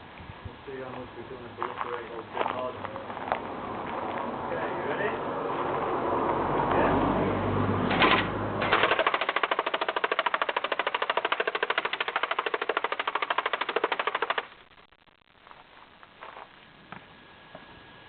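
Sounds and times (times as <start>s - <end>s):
airsoft gun full-auto burst: 8.0s - 14.6s.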